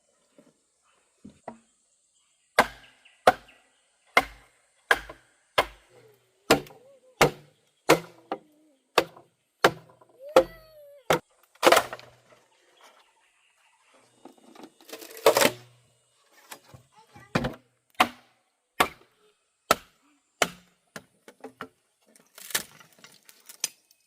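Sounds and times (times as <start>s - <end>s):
chopping blows: 6.5s - 12.1s.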